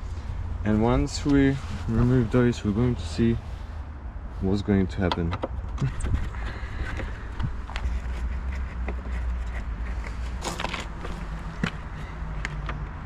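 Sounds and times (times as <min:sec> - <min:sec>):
steady low rumble: 0:00.0 - 0:13.0
short scraping rustle: 0:01.2 - 0:03.8.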